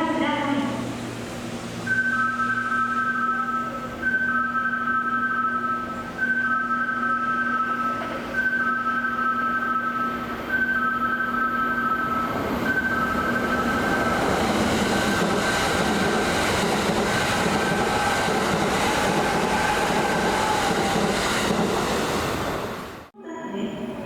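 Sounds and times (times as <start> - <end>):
train wheels rumbling on rail: 10.2 - 23.1.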